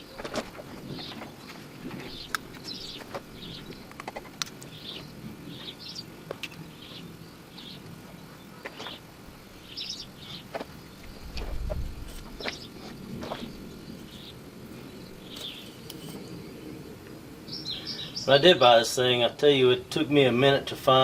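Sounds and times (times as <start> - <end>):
birds chirping: 0.0 - 21.0
sharp clicks and knocks: 1.9 - 4.8.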